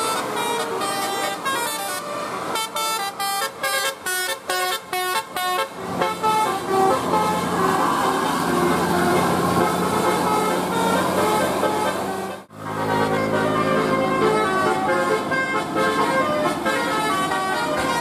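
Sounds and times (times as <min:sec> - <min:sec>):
musical air horn melody: 0:00.0 - 0:18.0.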